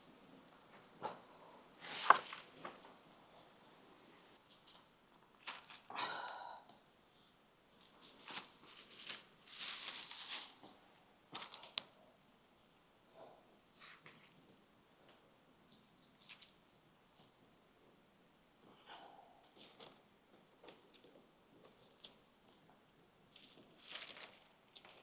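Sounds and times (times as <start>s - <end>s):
roasted turkey crunching and ripping: 8.0s - 10.7s.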